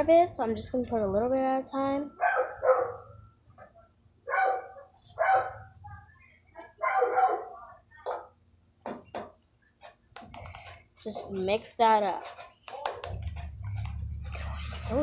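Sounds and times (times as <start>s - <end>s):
dog yipping: 2.2s - 3.1s, 4.3s - 5.7s, 6.8s - 7.6s
dog barking: 2.2s - 3.2s, 4.3s - 5.8s, 6.6s - 8.3s.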